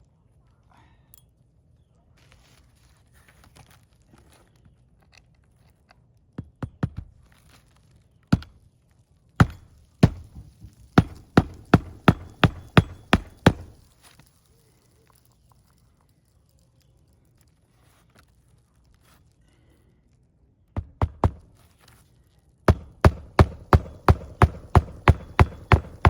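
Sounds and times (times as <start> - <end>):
hammer striking roof nails: 9.4 - 13.8, 20.8 - 21.5, 22.7 - 26.0.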